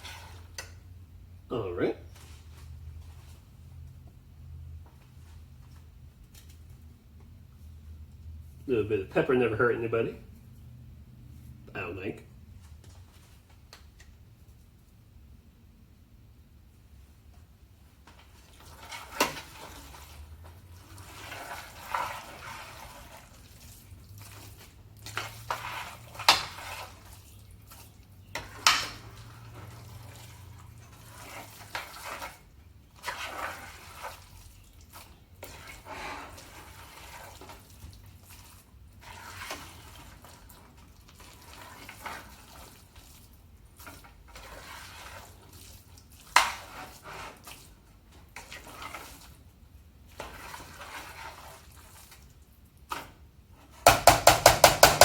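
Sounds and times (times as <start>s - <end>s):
utensil scraping rice in pan: 0.0s - 0.8s, 18.1s - 53.8s
utensil knocking against pan: 53.8s - 55.0s.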